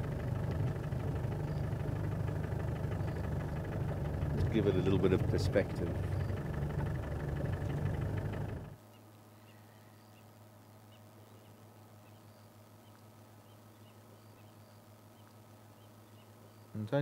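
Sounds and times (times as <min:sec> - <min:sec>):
vehicle engine idling: 0:00.0 - 0:08.8
faint low hum: 0:00.0 - 0:17.0.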